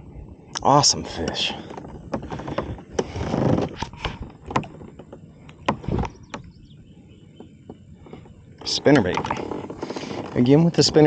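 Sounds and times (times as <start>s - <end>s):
irregular knocks and clicks: 1.2s - 6.5s
rustling: 8.0s - 11.0s.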